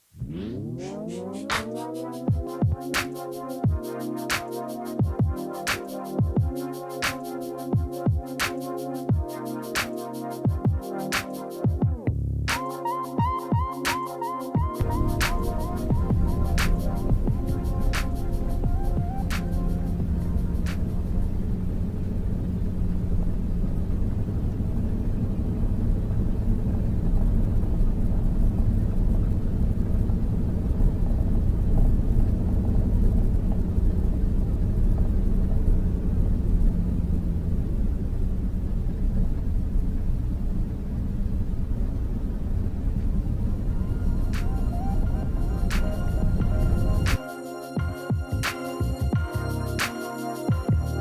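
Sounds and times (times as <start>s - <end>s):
faint hum: 14.8s - 47.2s
vehicle engine and road rumble: 14.8s - 47.2s.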